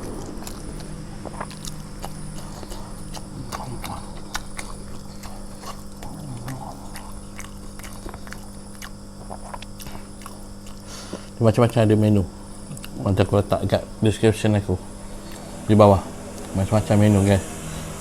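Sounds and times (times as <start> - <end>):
person chewing: 0.0 - 11.4, 12.4 - 13.0
steady low hum: 0.0 - 18.0.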